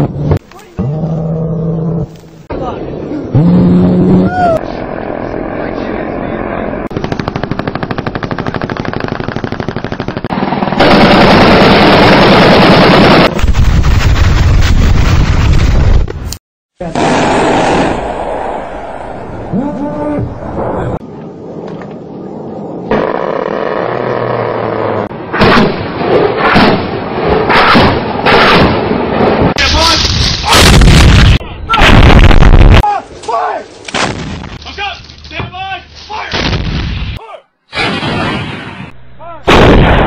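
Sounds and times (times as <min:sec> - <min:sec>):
steady combat noise: 0:06.8 - 0:15.9
loud weapon blasts: 0:39.5 - 0:40.0.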